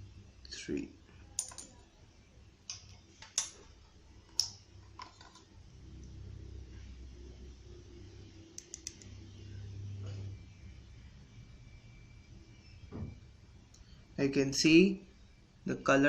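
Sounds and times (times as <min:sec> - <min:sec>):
glassware clicking and tapping: 0:01.4 - 0:01.8.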